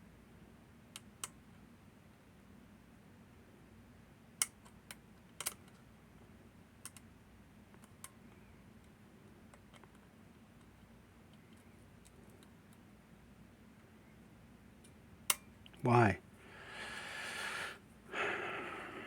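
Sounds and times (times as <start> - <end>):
faint low hum: 0.0 - 19.0
lock picking metallic clicks: 4.4 - 5.8, 6.8 - 7.0.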